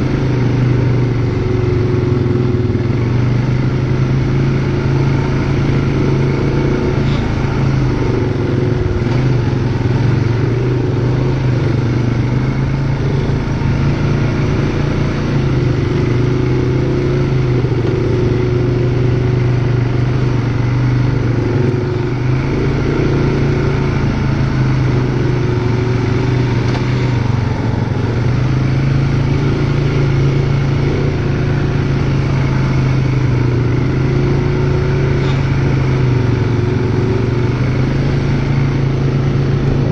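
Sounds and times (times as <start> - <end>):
atv engine running: 0.0 - 39.9.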